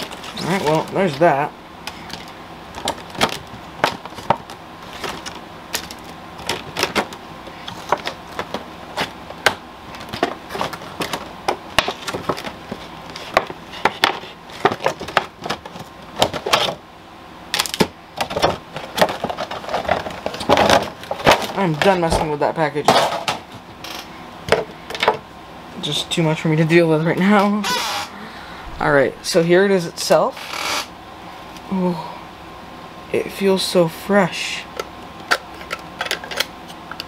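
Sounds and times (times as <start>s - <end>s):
plastic packaging clicking and snapping: 1.9s - 16.8s, 17.5s - 21.8s.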